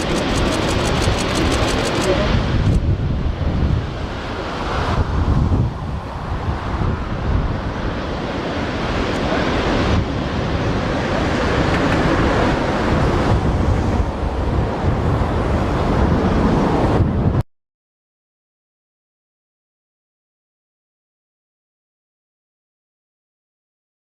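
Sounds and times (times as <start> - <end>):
wind buffeting microphone: 0.0 - 17.4.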